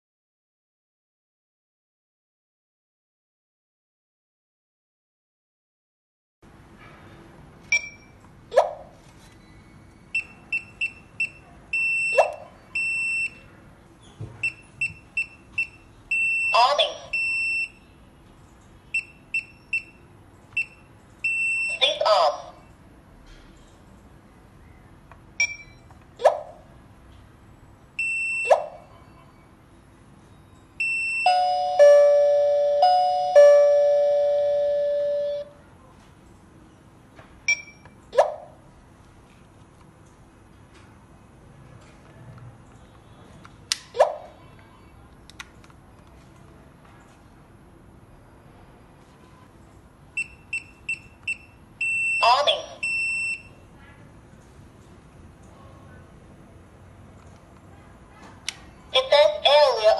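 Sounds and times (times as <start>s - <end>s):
alarm keypad beeping: 10.1s - 13.4s, 14.4s - 17.9s, 18.9s - 22.1s, 28.0s - 28.6s, 30.8s - 35.5s, 50.2s - 53.6s
ding-dong chime: 31.2s - 35.5s.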